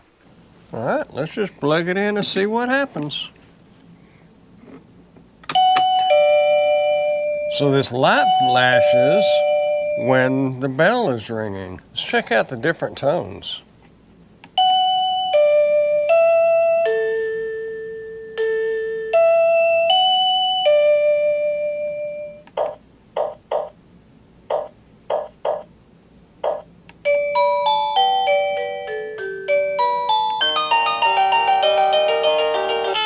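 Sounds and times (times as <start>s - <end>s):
doorbell chime melody: 5.6s - 10.5s, 14.6s - 22.4s, 27.0s - 33.0s.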